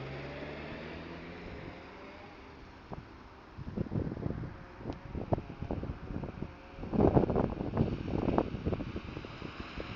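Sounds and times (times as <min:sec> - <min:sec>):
wind buffeting microphone: 0:02.8 - 0:09.9.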